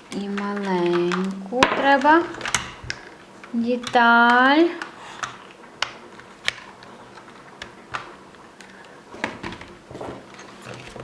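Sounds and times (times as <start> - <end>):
plastic toy parts clicking: 0.2 - 8.7.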